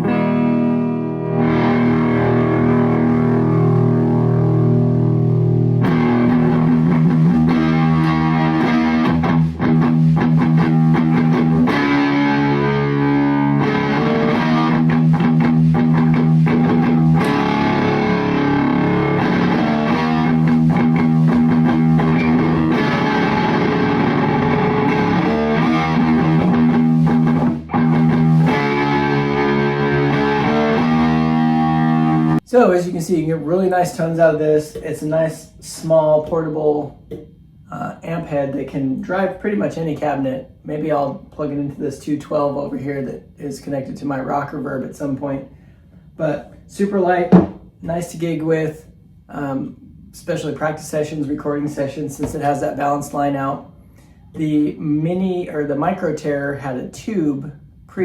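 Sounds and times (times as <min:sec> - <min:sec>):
electric guitar chords: 0:00.0 - 0:32.5.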